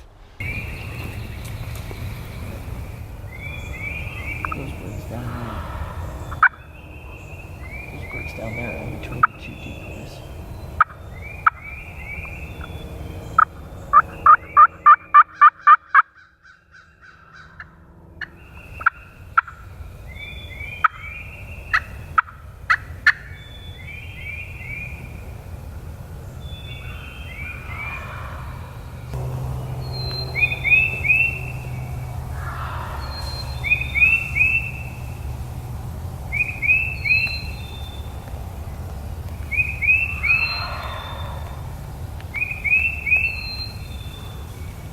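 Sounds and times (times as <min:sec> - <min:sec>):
turkeys gobbling: 0:00.4 - 0:19.6, 0:20.2 - 0:23.4, 0:26.6 - 0:43.9
turkey yelps: 0:03.4 - 0:12.3, 0:13.4 - 0:19.5, 0:26.8 - 0:29.0, 0:30.0 - 0:35.2, 0:39.5 - 0:41.8.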